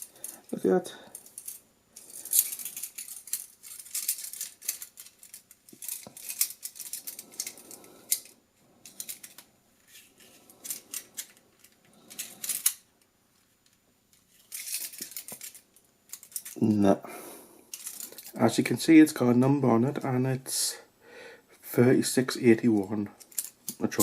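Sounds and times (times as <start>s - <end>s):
metal toy handcuffs clicking: 1.1s - 9.4s, 14.5s - 16.6s.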